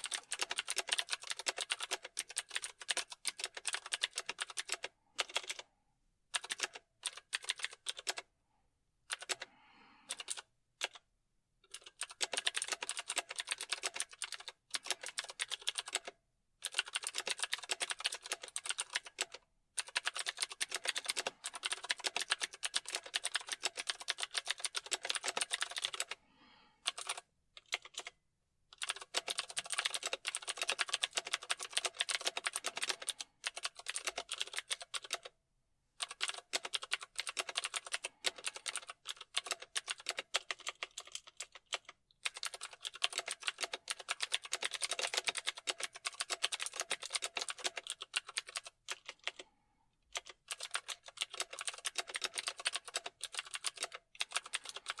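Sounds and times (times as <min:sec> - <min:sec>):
computer keyboard typing: 0:00.0 - 0:05.6, 0:06.3 - 0:08.3, 0:09.1 - 0:09.5, 0:10.1 - 0:11.0, 0:11.6 - 0:26.2, 0:26.8 - 0:28.2, 0:28.8 - 0:35.4, 0:36.0 - 0:49.5, 0:50.1 - 0:55.0.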